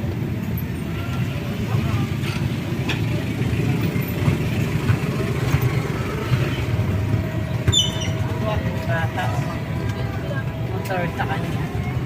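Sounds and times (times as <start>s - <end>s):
vehicle engine rumble: 0.0s - 12.0s
high squeak: 7.7s - 8.2s.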